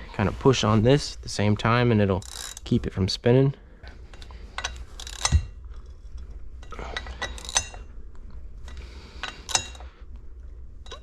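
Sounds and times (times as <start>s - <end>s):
wrench tightening bolts: 2.2s - 2.8s, 4.1s - 5.6s, 6.9s - 7.9s, 8.7s - 10.0s.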